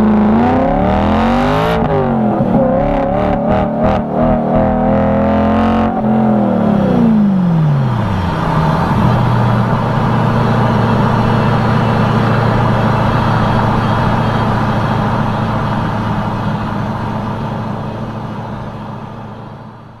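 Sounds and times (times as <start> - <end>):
car engine revving and idling: 0.0 - 20.0.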